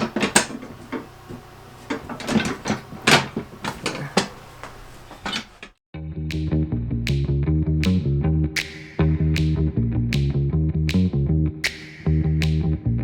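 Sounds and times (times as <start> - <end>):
hand tools clicking on metal: 0.0 - 5.8
guitar music: 6.0 - 13.0.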